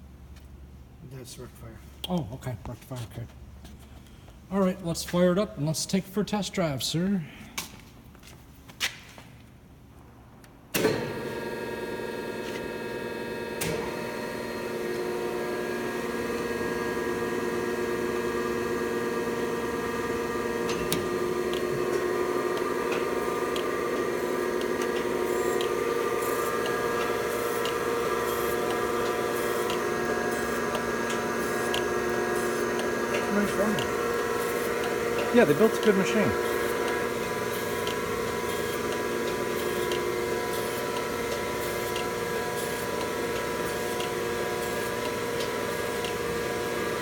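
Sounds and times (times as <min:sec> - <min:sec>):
surface grinder motor whining: 0:11.6 - 0:47.0.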